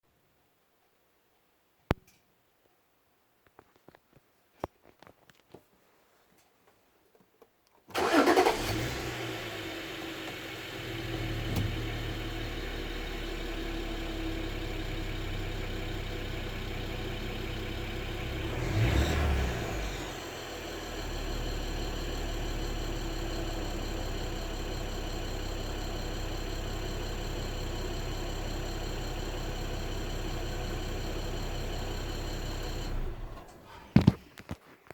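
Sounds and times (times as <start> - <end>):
car engine starting and idling: 7.9 - 34.0.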